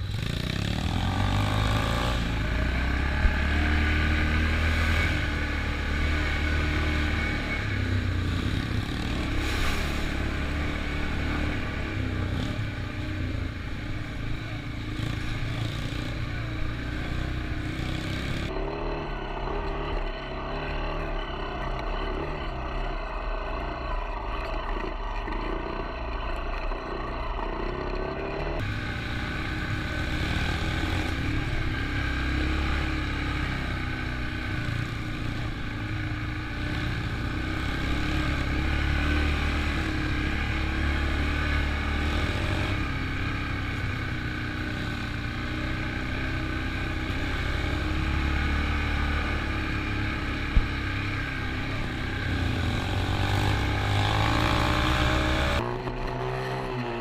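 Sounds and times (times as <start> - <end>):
off-road vehicle engines running: 0.0 - 57.0.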